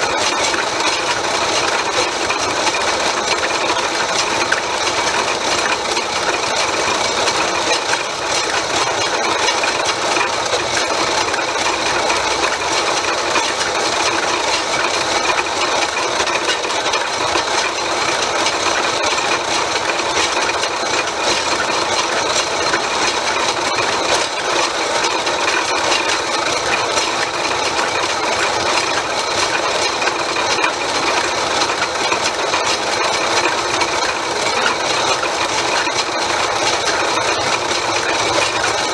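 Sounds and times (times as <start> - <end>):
metal lathe whirring: 0.0 - 38.9.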